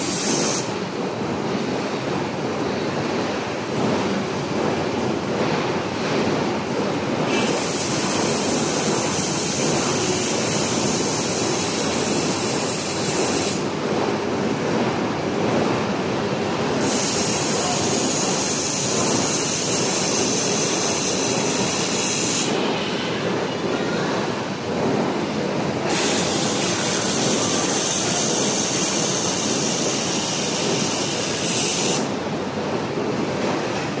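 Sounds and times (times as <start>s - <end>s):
laser welding machine running: 0.0s - 1.0s, 7.1s - 13.8s, 16.6s - 23.7s, 24.4s - 33.2s.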